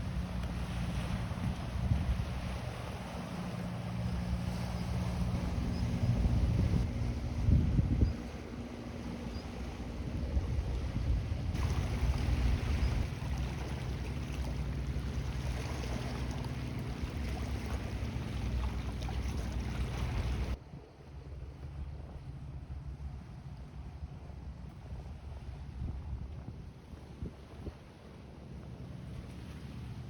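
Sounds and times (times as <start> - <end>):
ship engine drone: 0.0 - 20.6
waves at the shore: 0.0 - 30.0
wind: 0.0 - 30.0.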